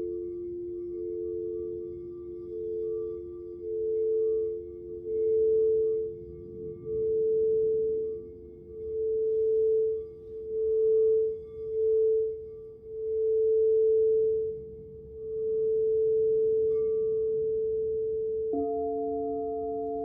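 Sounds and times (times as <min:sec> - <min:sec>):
singing bowl sustained note: 0:00.0 - 0:20.0.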